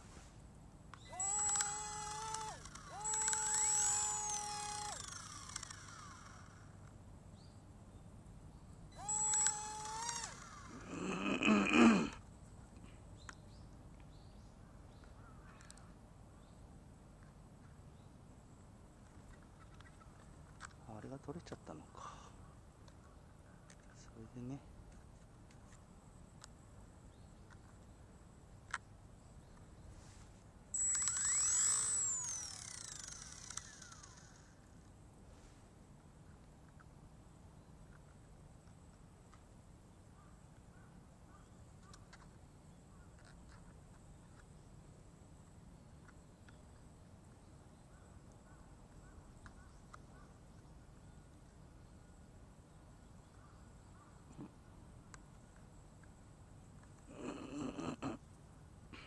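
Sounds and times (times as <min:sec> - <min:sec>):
faint small clicks: 0:00.9 - 0:03.7, 0:09.2 - 0:10.5, 0:12.7 - 0:14.2, 0:15.0 - 0:15.9, 0:28.6 - 0:29.7, 0:41.8 - 0:42.4, 0:46.0 - 0:46.9, 0:49.4 - 0:50.7, 0:55.1 - 0:56.2
sharp click: 0:00.9 - 0:05.8, 0:09.2 - 0:10.4
toy helicopter motor whine: 0:01.0 - 0:06.8, 0:09.0 - 0:11.0, 0:30.8 - 0:34.7.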